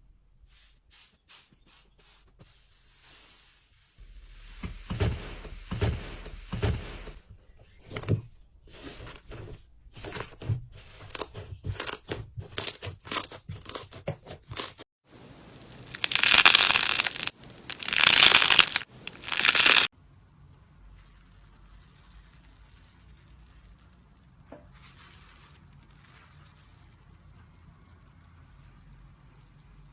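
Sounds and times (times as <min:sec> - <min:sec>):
dense crackling and crunching: 0:15.2 - 0:19.9
slime squeezed by hand: 0:15.6 - 0:19.9.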